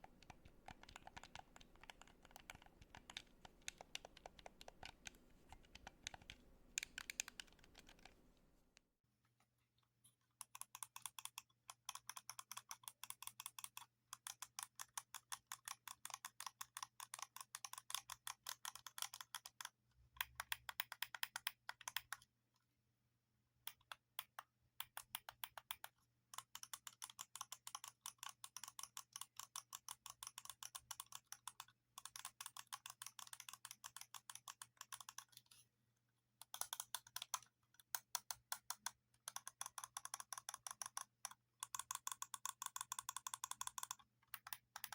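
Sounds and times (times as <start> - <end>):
buttons clicking rapidly: 0.0 - 8.5.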